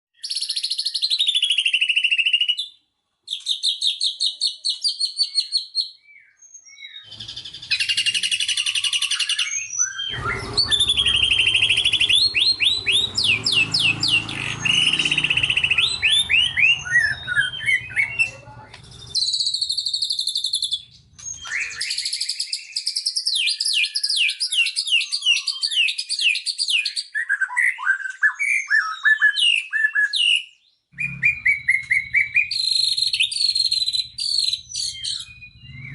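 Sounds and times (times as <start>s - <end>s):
bird whistles and trills: 0.2s - 35.9s
low rumble: 10.1s - 19.2s, 31.0s - 35.9s.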